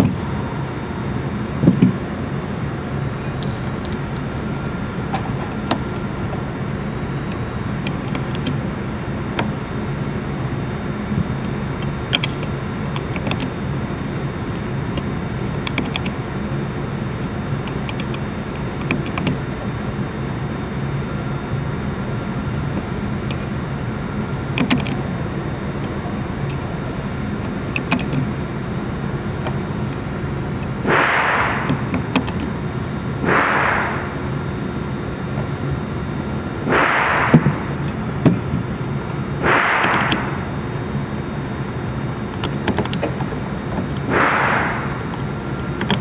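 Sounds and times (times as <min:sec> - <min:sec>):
steady hum and hiss: 0:00.0 - 0:46.0
pistol shots: 0:33.2 - 0:34.2, 0:36.7 - 0:37.5.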